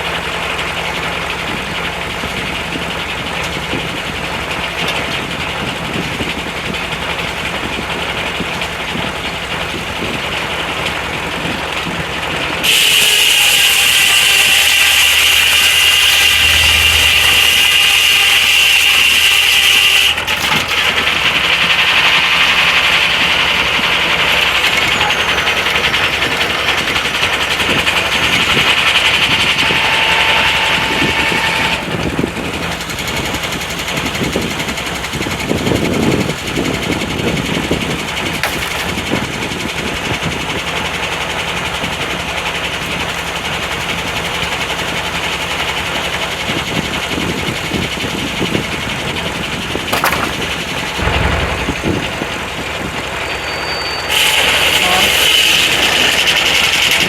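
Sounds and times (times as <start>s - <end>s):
sawmill running: 0.0s - 57.0s
saw blade cutting log: 12.6s - 23.3s, 27.8s - 31.8s, 38.3s - 39.2s, 49.9s - 52.0s, 54.1s - 57.0s.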